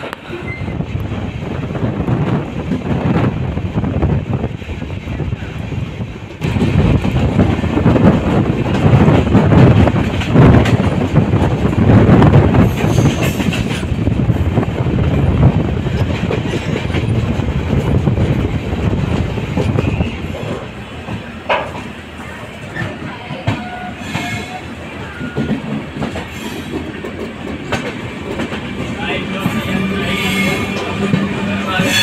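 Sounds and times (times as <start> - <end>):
train wheels rumbling on rails: 0.0 - 32.0.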